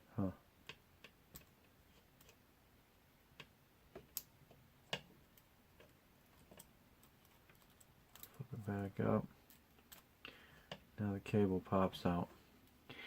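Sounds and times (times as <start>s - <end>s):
light clicks of small parts: 4.9s - 10.9s.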